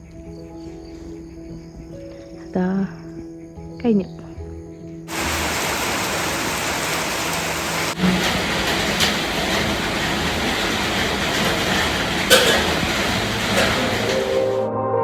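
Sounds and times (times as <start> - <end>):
heavy rain pouring: 5.1 - 14.7.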